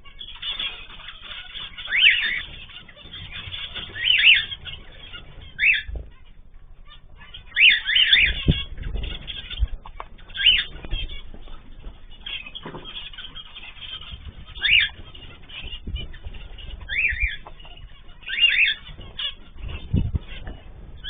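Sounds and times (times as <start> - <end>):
cage birds chirping: 0.0 - 21.0
low thuds: 8.2 - 21.0.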